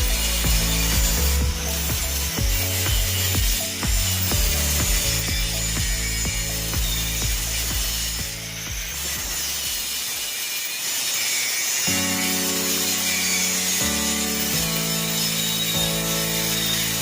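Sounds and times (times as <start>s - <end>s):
background music with bass line: 0.0s - 9.8s.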